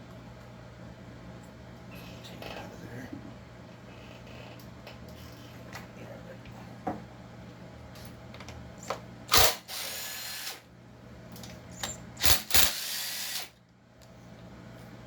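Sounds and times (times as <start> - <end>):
power driver running: 8.8 - 10.6.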